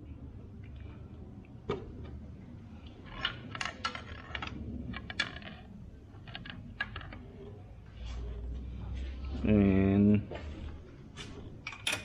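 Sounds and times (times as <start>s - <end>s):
metal tools clinking: 11.6s - 12.0s.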